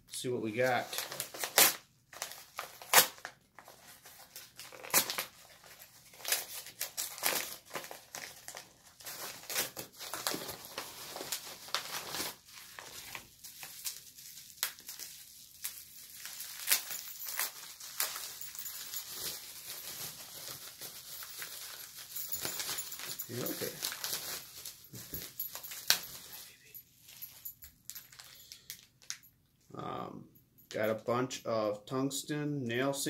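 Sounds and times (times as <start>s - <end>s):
packaging crinkling and tearing: 0.8s - 26.6s.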